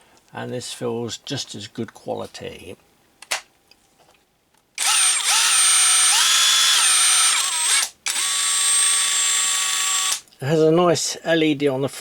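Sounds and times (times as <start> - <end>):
impact wrench motor whining: 4.8 - 10.2.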